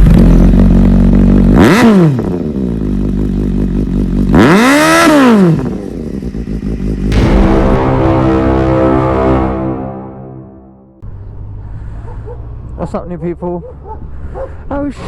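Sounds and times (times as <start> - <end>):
motorcycle engine idling and revving: 0.0 - 7.2, 11.0 - 15.0.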